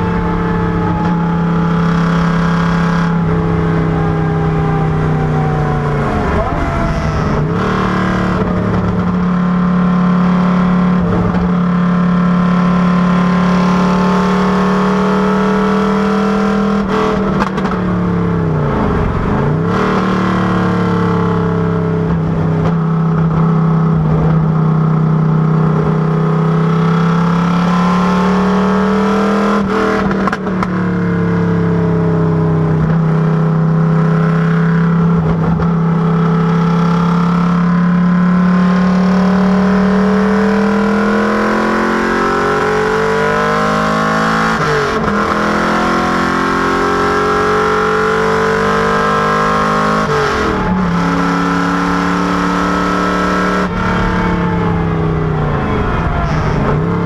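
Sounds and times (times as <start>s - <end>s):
car engine running hard: 0.0s - 57.0s.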